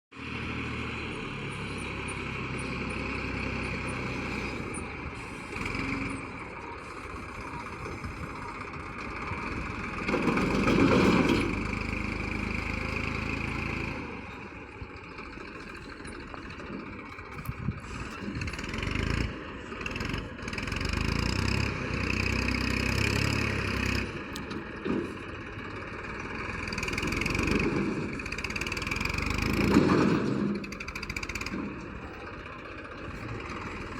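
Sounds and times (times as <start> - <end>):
vehicle engine running: 0.1 - 33.9.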